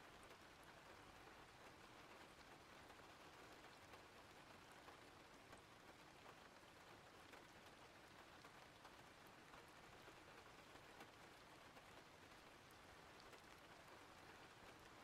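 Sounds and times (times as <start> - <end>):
faint steady rain: 0.0 - 15.0
soft raindrop ticks: 0.0 - 15.0.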